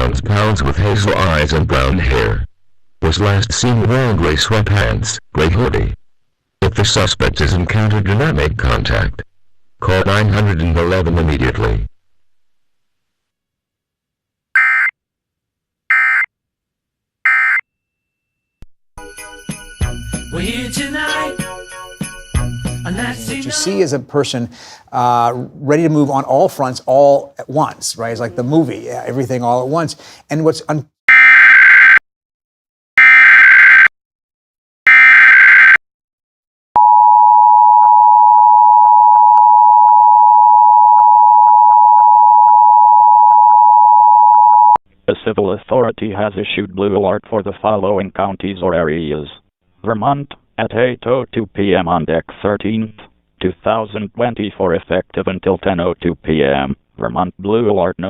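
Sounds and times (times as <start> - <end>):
two-tone alarm: 14.6 - 14.9, 15.9 - 16.3, 17.3 - 17.7, 31.1 - 32.0, 33.0 - 33.9, 34.9 - 35.8, 36.8 - 44.8.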